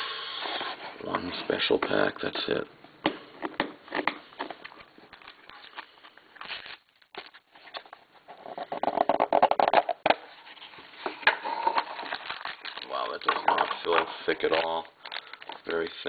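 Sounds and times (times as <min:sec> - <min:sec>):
wrapper rustling and crinkling: 0:04.5 - 0:07.8, 0:11.6 - 0:16.0.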